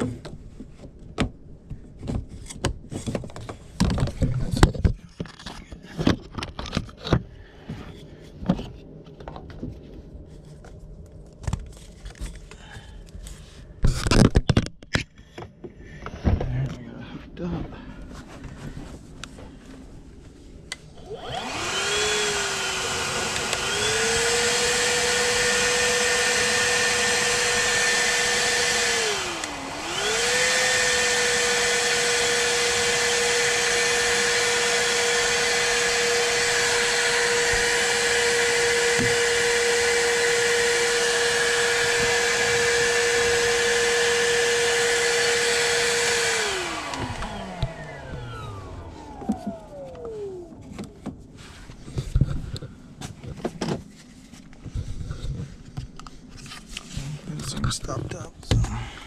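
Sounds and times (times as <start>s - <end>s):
shop vac whining: 17.3s - 59.0s.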